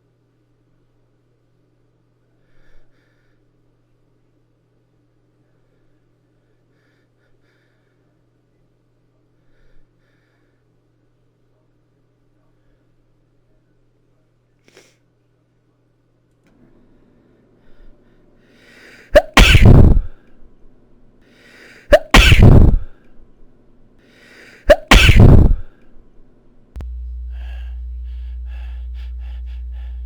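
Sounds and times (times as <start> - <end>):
steady low hum: 16.6 - 21.2, 21.9 - 23.9, 24.8 - 30.0
catching in-breath: 17.6 - 20.4, 21.2 - 23.0, 24.0 - 25.8, 26.8 - 30.0
person sneezing: 18.8 - 20.2, 21.7 - 23.0, 24.5 - 25.7, 27.3 - 30.0.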